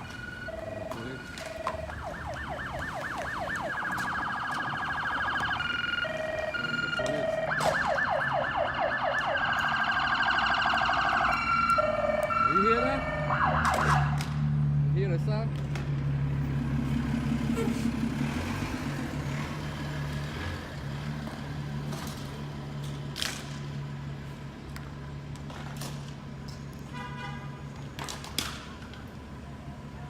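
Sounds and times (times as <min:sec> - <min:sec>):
emergency vehicle siren: 0:00.0 - 0:14.7.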